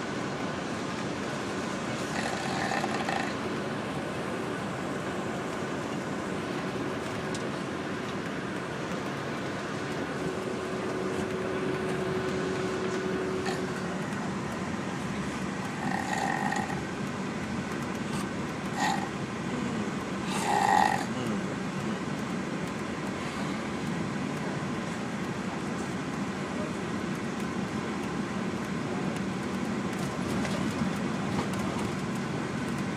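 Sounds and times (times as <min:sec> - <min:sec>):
bus engine and road rumble: 0:00.0 - 0:32.9
loud snorts: 0:02.1 - 0:03.4, 0:15.7 - 0:16.8, 0:18.7 - 0:19.1, 0:20.3 - 0:21.2
man snoring: 0:02.1 - 0:03.4, 0:15.8 - 0:16.8, 0:18.8 - 0:21.4.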